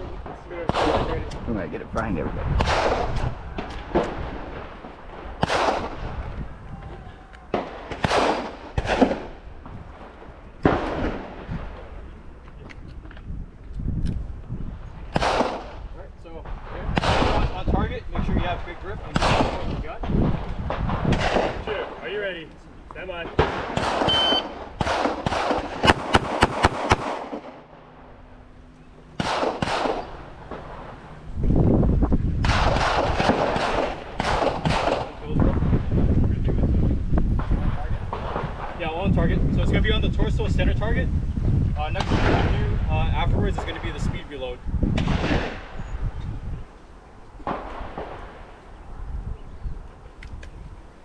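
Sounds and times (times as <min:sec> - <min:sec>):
gunshots with echo: 0:02.6 - 0:03.2, 0:05.4 - 0:06.1, 0:07.5 - 0:09.3, 0:15.2 - 0:15.7, 0:23.4 - 0:27.7, 0:29.2 - 0:31.3, 0:32.4 - 0:35.4
handgun shots: 0:23.8 - 0:27.5, 0:29.2 - 0:31.2, 0:32.5 - 0:35.2.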